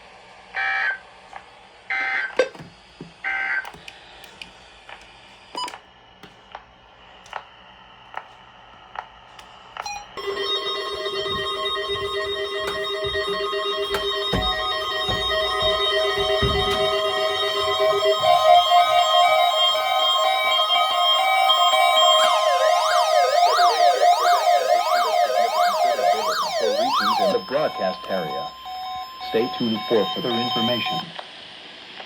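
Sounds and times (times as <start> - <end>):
held-chord music: 10.2 - 30.6
digital data bursts: 10.2 - 31.1.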